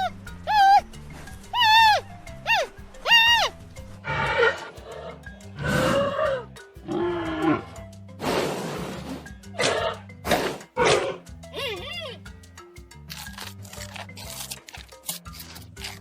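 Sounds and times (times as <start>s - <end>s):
low animal grunting calls: 0.0s - 12.2s
high arched animal call: 0.0s - 12.3s
background music: 0.0s - 16.0s.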